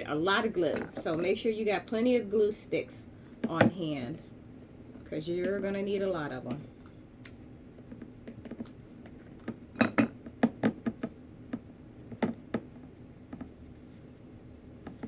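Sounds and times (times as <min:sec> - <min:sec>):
faint steady hum: 0:00.0 - 0:15.0
glass vase clinking: 0:09.8 - 0:10.2.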